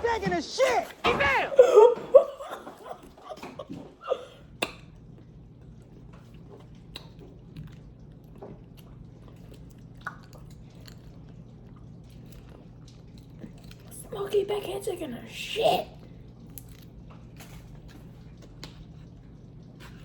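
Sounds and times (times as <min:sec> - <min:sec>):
person chewing food: 0:04.4 - 0:13.9.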